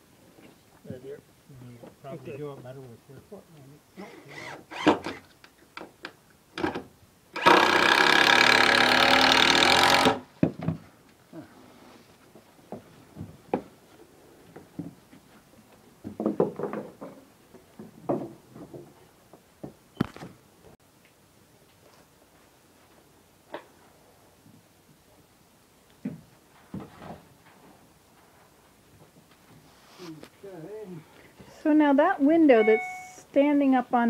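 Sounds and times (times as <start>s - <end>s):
handheld power tool running: 7.4s - 10.2s.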